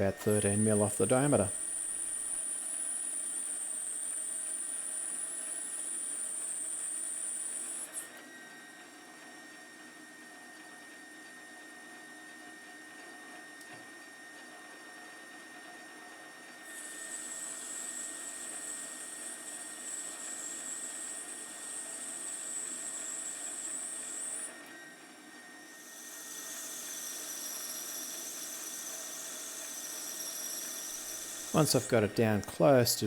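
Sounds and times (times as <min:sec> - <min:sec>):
lathe cutting metal: 0:00.0 - 0:08.0, 0:16.7 - 0:24.5, 0:25.8 - 0:33.0.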